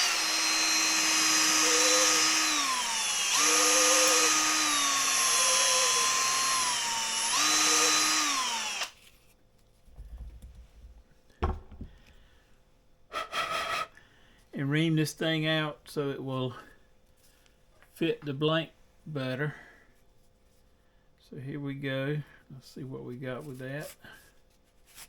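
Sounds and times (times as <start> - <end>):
electric drill motor whine: 0.0 - 9.0.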